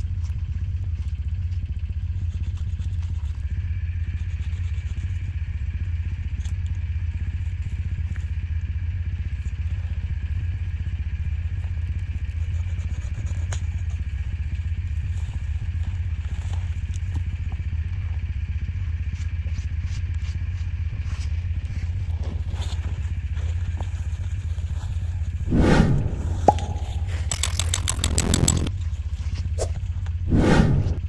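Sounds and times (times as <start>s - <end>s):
faint clicks: 26.5s - 28.8s.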